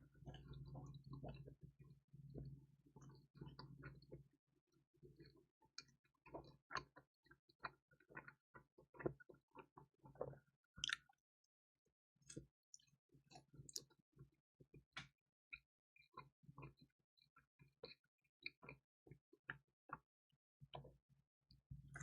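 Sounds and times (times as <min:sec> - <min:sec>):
chewing crispy food crunches: 0:10.2 - 0:11.1.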